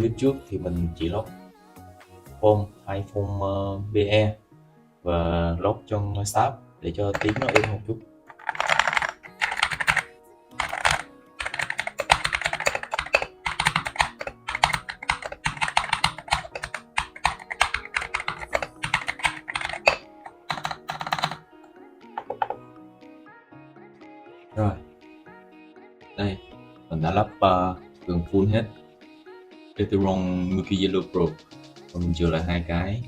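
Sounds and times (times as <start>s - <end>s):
fast typing on mechanical keyboard: 7.1s - 21.4s.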